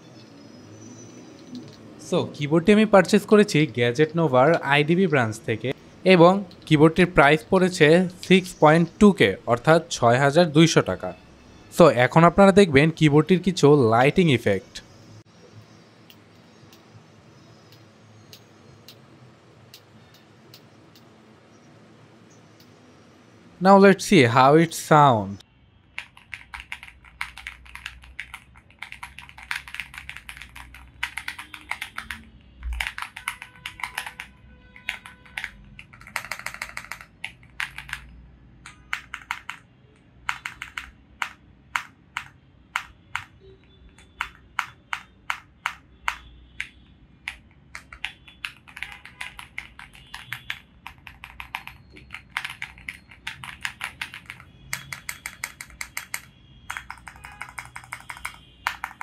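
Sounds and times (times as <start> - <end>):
mechanical keyboard typing: 26.0 - 59.0.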